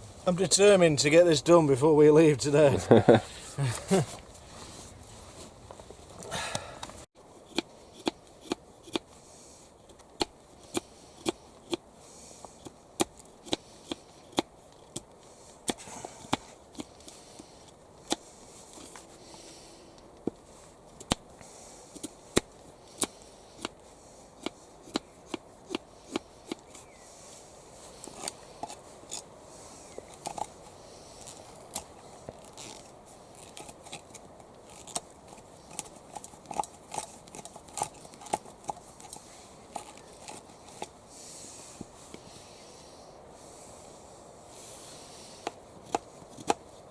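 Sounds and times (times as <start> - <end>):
hand tools cutting wood: 31.2 - 40.9.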